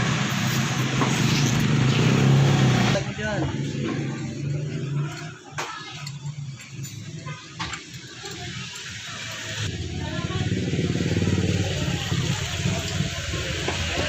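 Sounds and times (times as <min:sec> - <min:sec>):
small motorcycle engine running: 0:00.0 - 0:14.0
metallic clicks and knocks: 0:03.8 - 0:08.9.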